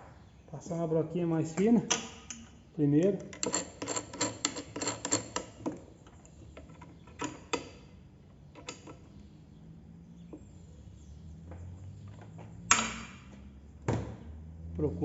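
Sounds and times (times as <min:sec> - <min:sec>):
metal tool clicks and knocks: 0:03.2 - 0:07.8.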